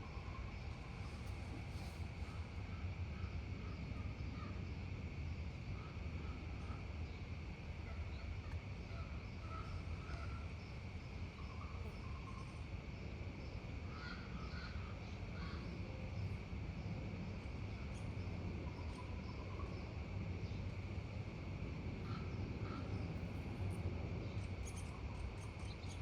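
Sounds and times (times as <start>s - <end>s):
high insect drone: 0.0s - 26.0s
steady low rumble: 12.3s - 26.0s.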